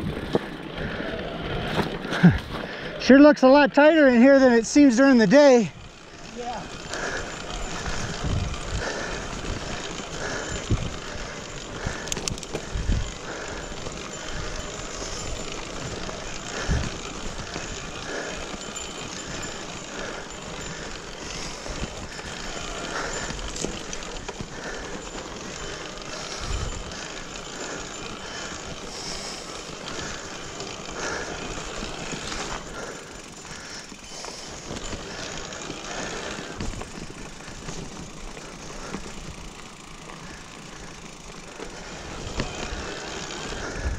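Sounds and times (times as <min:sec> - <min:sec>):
bike rattling: 0:00.0 - 0:43.9
mountain bike on dirt trail: 0:00.0 - 0:43.9.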